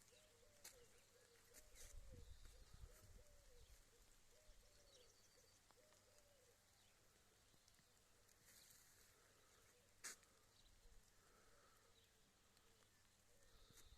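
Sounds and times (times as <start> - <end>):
dove cooing: 0.0 - 6.9.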